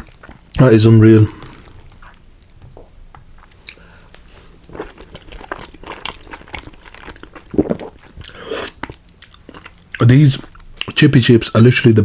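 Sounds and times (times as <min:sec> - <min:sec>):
chewing chips: 0:03.4 - 0:11.0.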